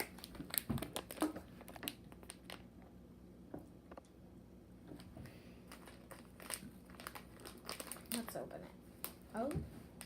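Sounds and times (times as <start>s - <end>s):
snack package crinkling: 0.0s - 2.9s, 5.6s - 9.2s.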